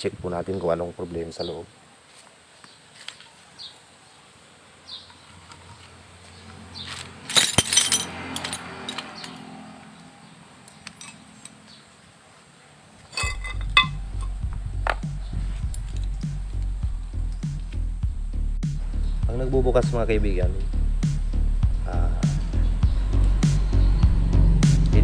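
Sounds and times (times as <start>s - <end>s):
metal parts and tools clinking: 6.9s - 9.6s, 10.6s - 11.8s, 13.1s - 16.3s
background music with steady beat: 13.3s - 25.0s.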